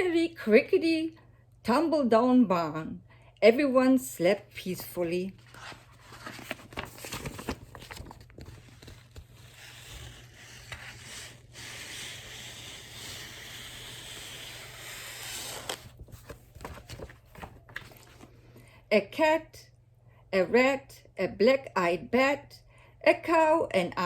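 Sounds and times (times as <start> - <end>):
paper rustling and scraping: 4.6 - 18.3.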